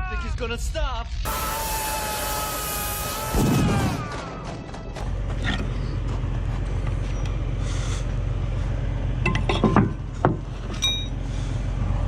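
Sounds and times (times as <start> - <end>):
engine idling: 3.4 - 12.0
metallic clanks: 9.2 - 11.2
ringing metal clink: 10.7 - 11.2.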